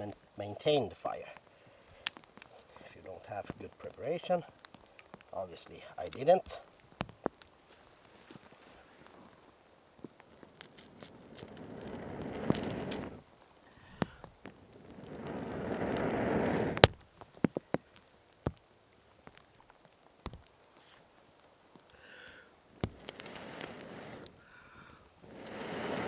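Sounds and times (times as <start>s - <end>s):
fire popping and crackling: 0.0s - 26.0s
person blowing on embers: 7.8s - 17.0s, 21.8s - 26.0s.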